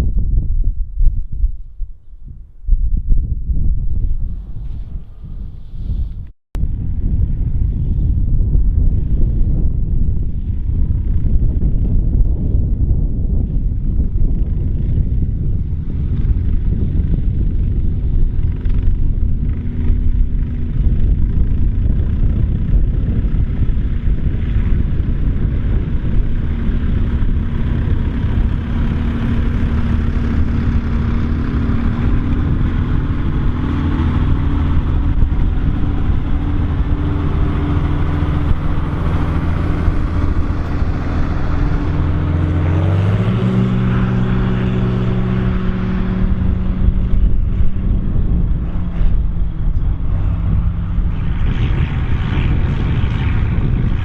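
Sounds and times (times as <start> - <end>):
tractor diesel engine running: 14.3 - 52.9.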